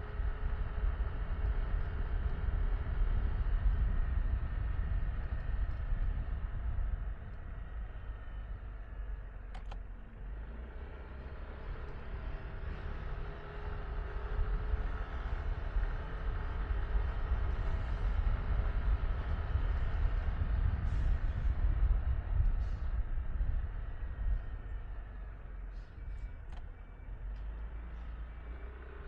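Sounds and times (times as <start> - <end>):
wind rumble on microphone: 0.0 - 9.5, 10.2 - 29.0
sharp click: 9.5 - 9.8.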